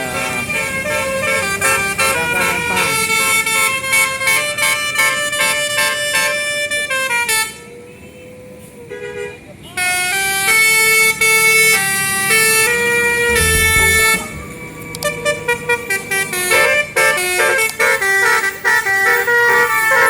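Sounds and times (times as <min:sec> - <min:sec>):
multi-tone bus horn melody: 0:00.0 - 0:08.3, 0:08.9 - 0:20.0
low rumble: 0:13.3 - 0:15.2.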